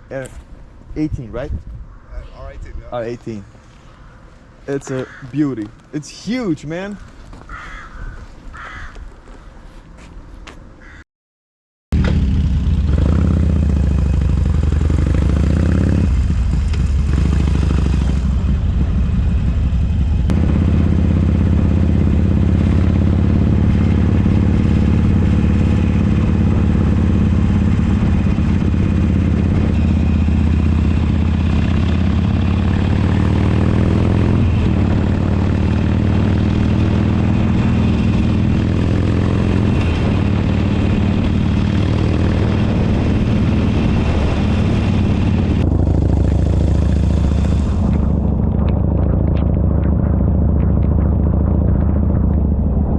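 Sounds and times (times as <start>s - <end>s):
motorcycle engine drone: 11.9s - 52.9s.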